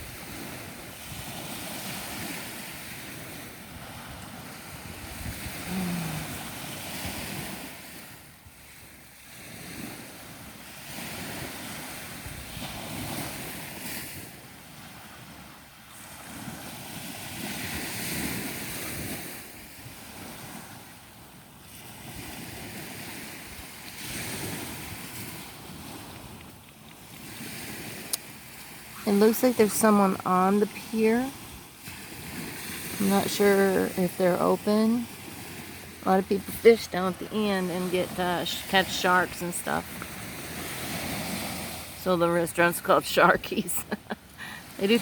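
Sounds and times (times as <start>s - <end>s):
ocean surf washing onto beach: 0.0s - 45.0s
wind buffeting microphone: 3.1s - 7.7s.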